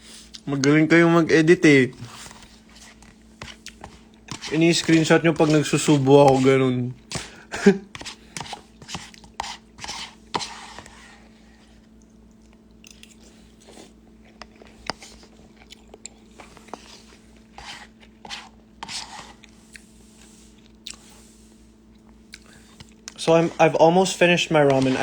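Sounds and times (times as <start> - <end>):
faint steady hum: 0.0 - 25.0
person chewing noodles: 0.1 - 0.5, 2.1 - 4.6, 7.0 - 23.5.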